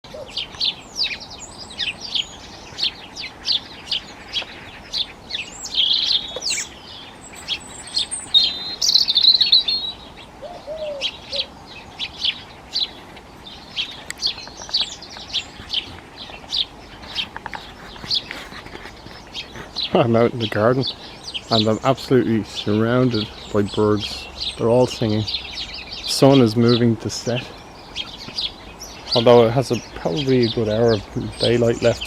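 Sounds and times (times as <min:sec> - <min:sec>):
bird twittering phrases: 0:00.0 - 0:32.0
songbirds chirping: 0:00.0 - 0:32.0.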